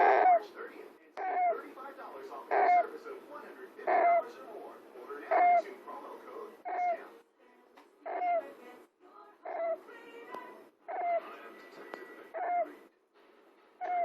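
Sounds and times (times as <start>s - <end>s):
hamster squeaking and snoring: 0.0s - 0.5s, 9.4s - 9.9s, 10.9s - 11.4s, 13.8s - 14.0s.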